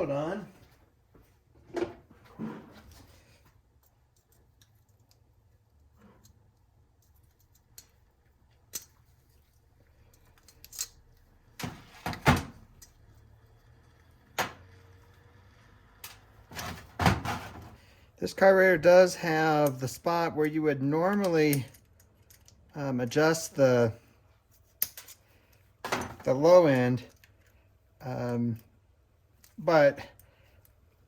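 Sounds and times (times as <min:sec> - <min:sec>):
clicks of small metal parts handled: 0:03.8 - 0:11.2, 0:21.0 - 0:22.8, 0:24.5 - 0:27.6.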